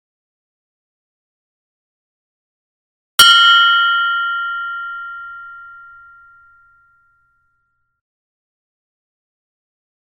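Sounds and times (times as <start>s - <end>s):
meditation bell ringing: 3.2s - 8.0s.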